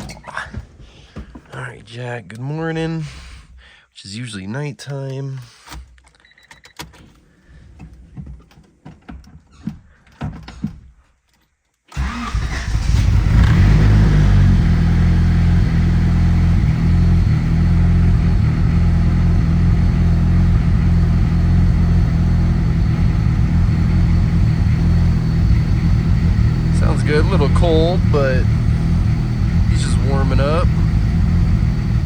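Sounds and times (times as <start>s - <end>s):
car engine idling: 12.0s - 32.0s.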